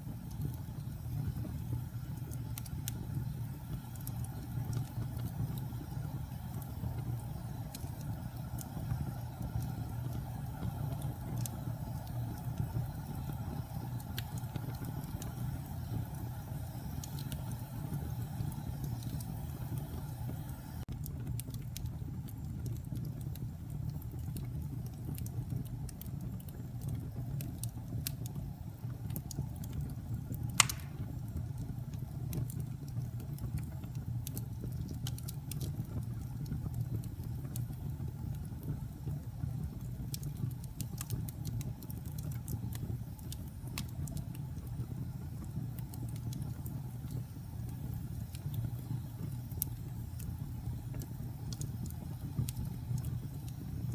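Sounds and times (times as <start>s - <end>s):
wood fire crackling: 0.0s - 53.9s
loud pop of fire: 30.4s - 31.4s.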